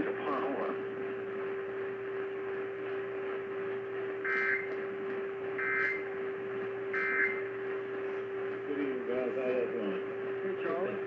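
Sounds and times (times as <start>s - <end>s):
steady low whistle: 4.2s - 4.8s, 5.6s - 6.1s, 6.9s - 7.6s
two-tone data warbles: 4.3s - 4.7s, 5.6s - 6.0s, 7.0s - 7.4s.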